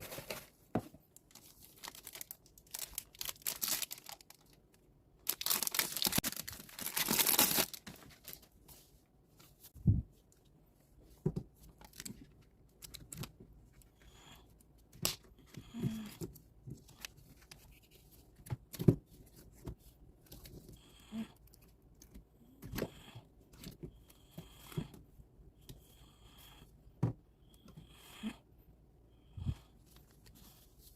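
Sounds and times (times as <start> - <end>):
plastic and paper crinkling: 0.0 - 8.9.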